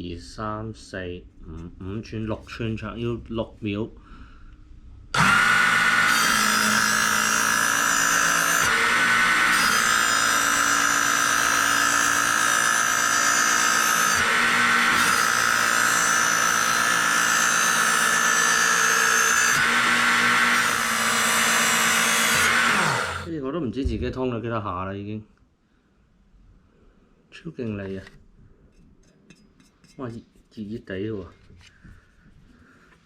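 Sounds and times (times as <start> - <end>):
knife sharpener grinding blade: 5.2 - 23.3.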